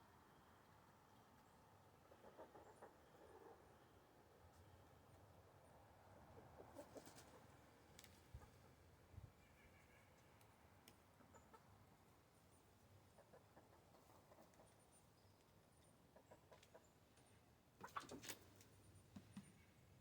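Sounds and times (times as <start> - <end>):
hens clucking: 2.0 - 3.7, 6.2 - 8.8, 13.0 - 14.8, 16.1 - 16.9, 17.8 - 18.6.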